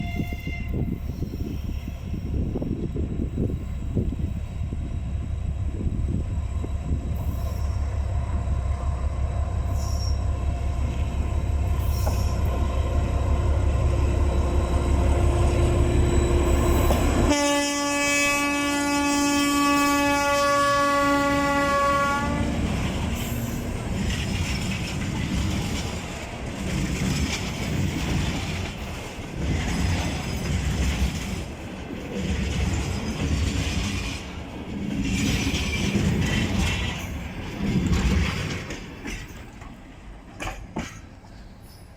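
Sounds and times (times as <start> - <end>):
locomotive horn blast: 0.0 - 1.0, 16.9 - 22.8
diesel locomotive engine drone: 0.0 - 41.9
freight wagons rumbling and clattering: 22.8 - 41.2.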